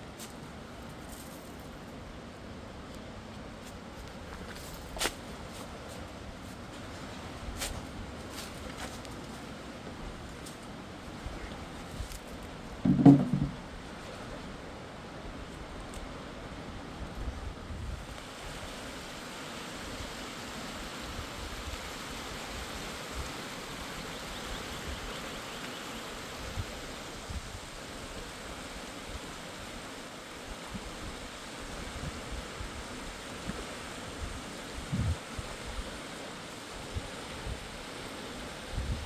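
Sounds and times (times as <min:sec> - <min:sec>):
low thumps: 0:12.8 - 0:13.7
river water rushing: 0:25.2 - 0:38.8.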